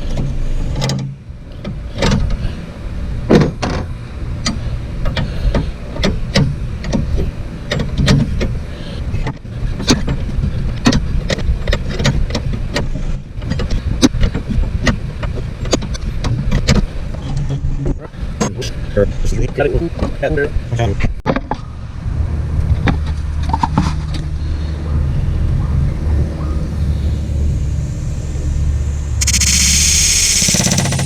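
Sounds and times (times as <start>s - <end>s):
steady low rumble: 0.0s - 31.0s.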